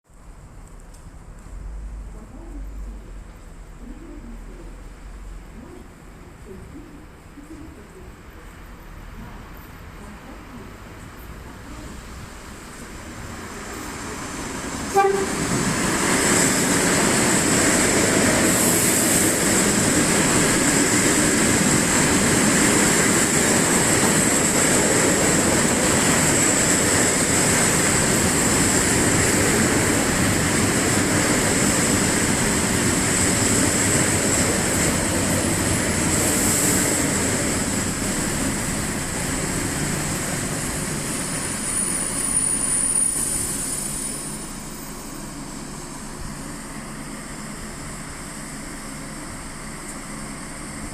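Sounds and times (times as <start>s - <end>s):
train wheels rushing: 12.0s - 45.2s.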